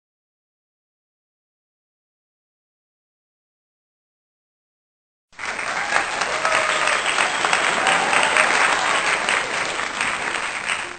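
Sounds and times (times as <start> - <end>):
crowd applause and cheering: 5.4 - 10.9.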